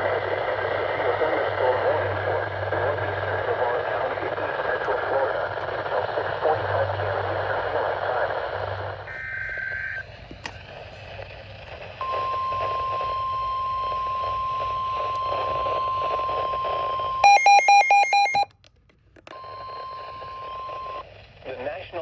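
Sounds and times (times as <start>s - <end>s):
radio hiss: 0.0s - 18.4s, 19.4s - 22.0s
steady warning alarm tone: 12.0s - 18.5s
short higher beep: 17.2s - 18.5s.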